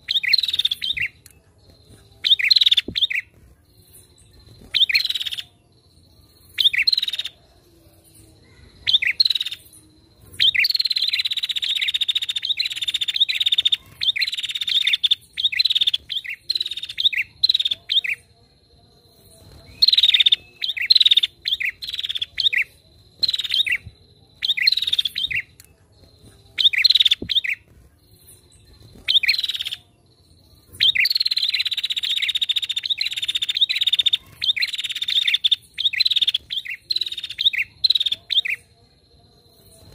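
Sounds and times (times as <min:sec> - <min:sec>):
bird rapid high chattering: 0:00.0 - 0:03.4, 0:10.4 - 0:18.2, 0:19.5 - 0:29.8, 0:30.8 - 0:38.6.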